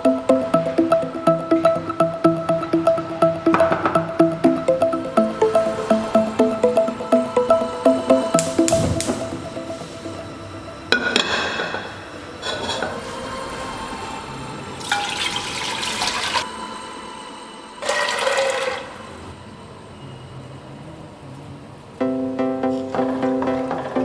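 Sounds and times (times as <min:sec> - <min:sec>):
faint background music: 0:00.0 - 0:12.8
water being poured: 0:14.8 - 0:16.5, 0:17.8 - 0:19.2.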